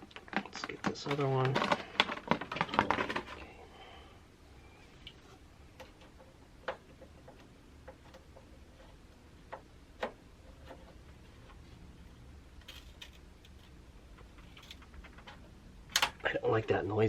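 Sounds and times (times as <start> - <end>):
plastic clicks and creaks: 0.0 - 3.4, 12.6 - 16.3.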